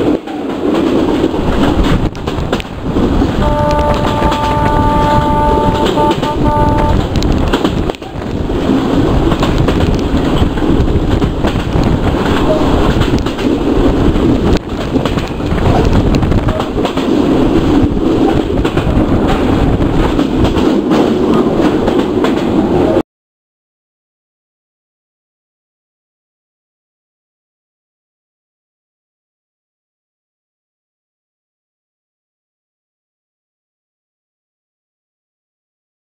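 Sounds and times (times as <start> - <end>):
wheels clattering over rails: 0.0 - 22.6
train rumbling at speed: 0.0 - 23.0.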